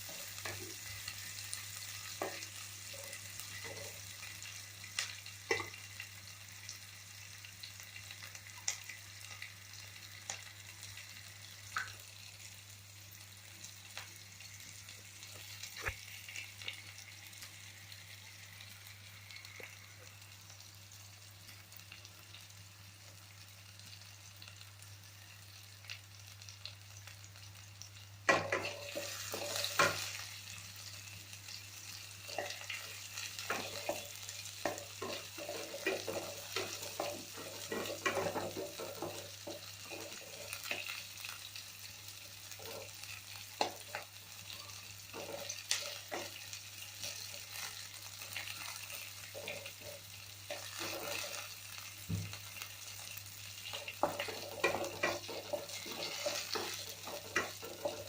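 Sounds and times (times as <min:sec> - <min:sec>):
oil sizzling in a pan: 0:00.0 - 0:58.0
spoon stirring and scraping: 0:53.8 - 0:58.0.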